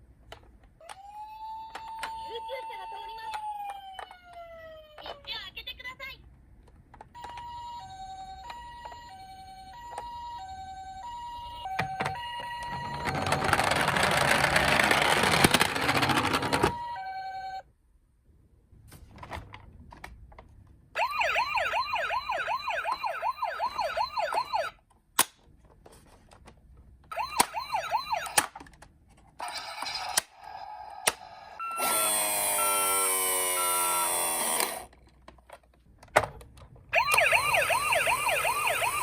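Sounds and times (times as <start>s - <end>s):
toy warbling siren: 0.8s - 5.3s, 7.2s - 15.3s, 16.3s - 17.6s, 21.0s - 24.8s, 27.1s - 28.5s, 29.5s - 34.8s, 36.9s - 39.0s.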